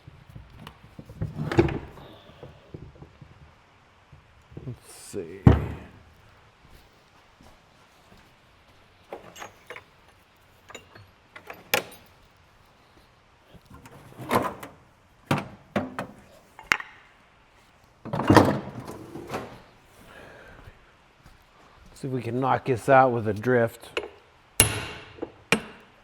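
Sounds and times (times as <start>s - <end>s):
metal parts knocking and clanking: 0.6s - 3.2s, 9.1s - 12.1s, 13.7s - 16.9s, 18.1s - 19.6s, 24.0s - 26.0s.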